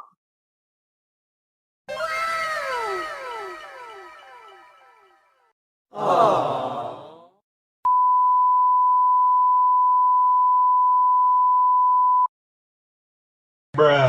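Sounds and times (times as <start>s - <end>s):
sound effect with wavering pitch: 1.9s - 5.3s
censor bleep tone: 7.9s - 12.3s.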